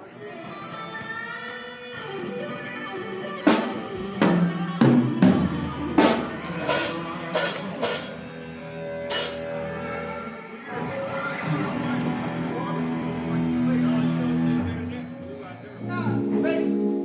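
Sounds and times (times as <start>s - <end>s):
cymbal crashes: 6.0s - 8.2s, 9.1s - 9.5s.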